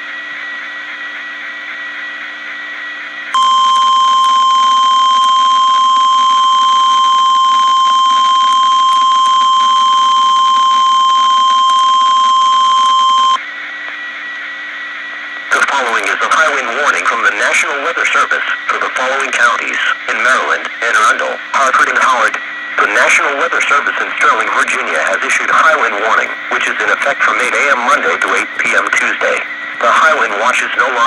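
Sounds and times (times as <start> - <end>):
loud steady warning tone: 0.0 - 31.0
radio hiss: 15.5 - 31.0.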